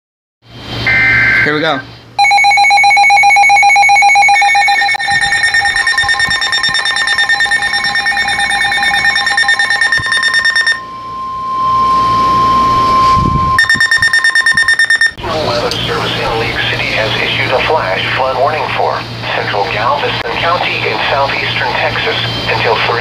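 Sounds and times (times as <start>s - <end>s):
pulsing electronic alarm: 0.8s - 1.6s, 2.2s - 15.2s
single steady tone: 2.2s - 15.2s.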